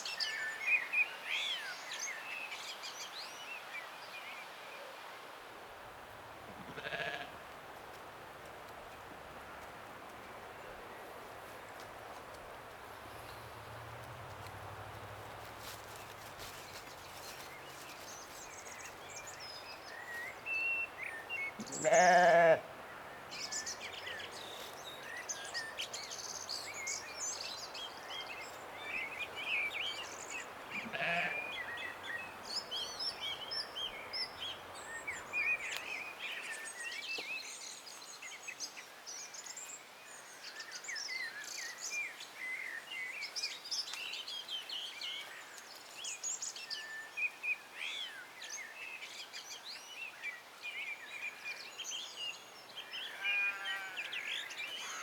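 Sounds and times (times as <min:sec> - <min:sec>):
sheep bleat: 0:06.6 - 0:07.4, 0:21.6 - 0:22.7, 0:30.7 - 0:31.4, 0:53.1 - 0:54.1.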